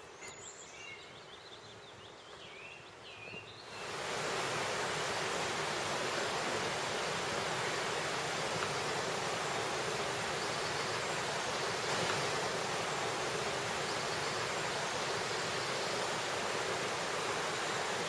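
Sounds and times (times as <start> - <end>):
birds singing: 0.0 - 4.0, 6.8 - 18.0
rush of flowing water: 3.3 - 18.0.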